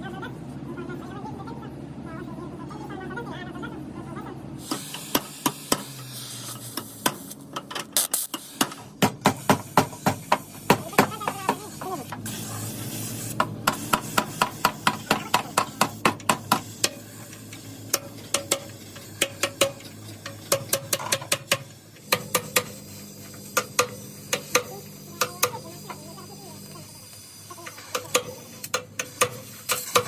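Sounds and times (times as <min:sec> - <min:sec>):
short hiss: 0:04.6 - 0:07.4.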